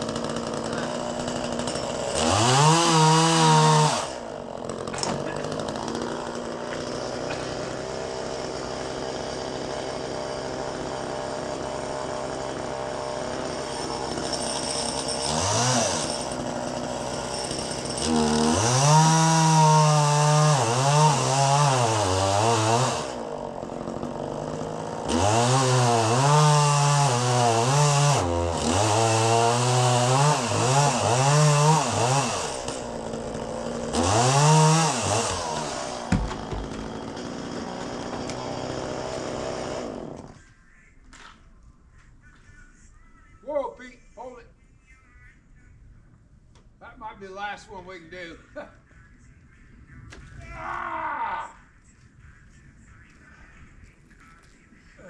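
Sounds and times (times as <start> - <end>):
chainsaw cutting wood: 0.0 - 40.4
chainsaw idling and revving: 0.0 - 40.4.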